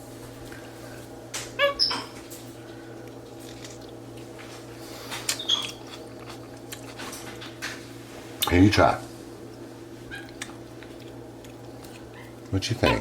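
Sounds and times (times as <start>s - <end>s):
steady low hum: 0.0s - 13.0s
monkey high-pitched call: 1.6s - 2.1s.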